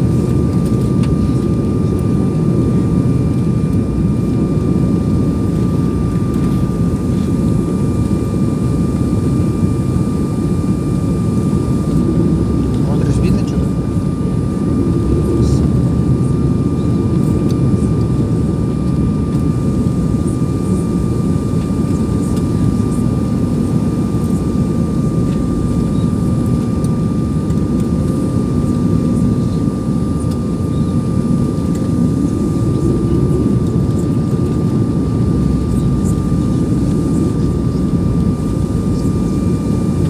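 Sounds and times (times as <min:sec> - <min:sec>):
airliner cabin engine rumble: 0:00.0 - 0:40.0
thin steady whine: 0:00.0 - 0:40.0.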